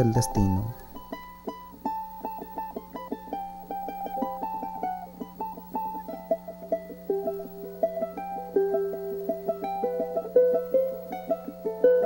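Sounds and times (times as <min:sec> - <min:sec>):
charango plucked notes: 0:00.0 - 0:12.0
steady low hum: 0:00.0 - 0:12.0.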